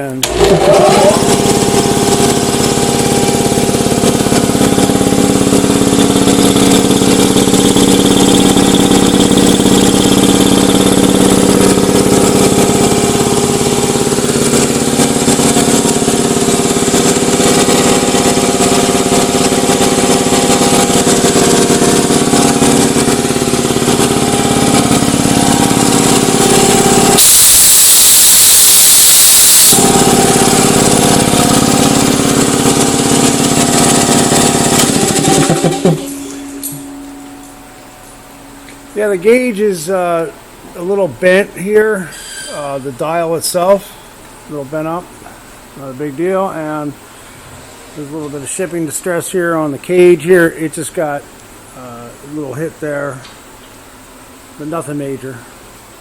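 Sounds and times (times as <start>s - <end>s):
electric air compressor running: 0.0s - 37.2s
loud hiss of air: 27.2s - 29.8s.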